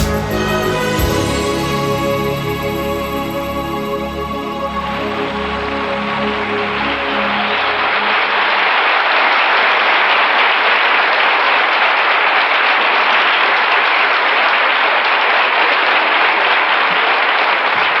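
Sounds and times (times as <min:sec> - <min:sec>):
audience applauding: 0:00.0 - 0:04.0, 0:06.1 - 0:18.0.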